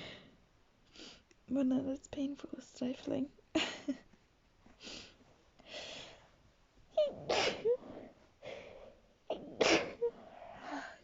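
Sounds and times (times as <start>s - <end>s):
woman sneezing: 7.0s - 7.8s, 9.6s - 10.1s.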